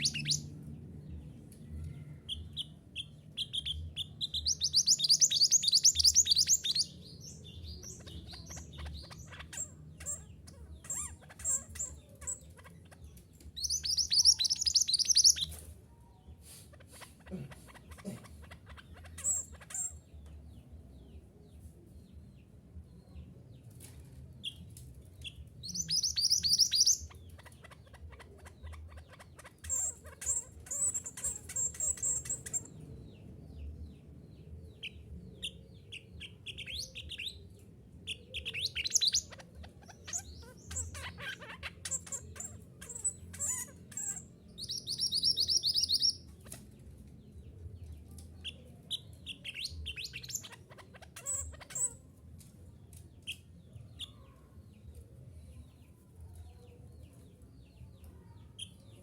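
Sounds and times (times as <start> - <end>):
faint low hum: 0.0 - 16.4
songbird chirping and trilling: 0.0 - 59.0.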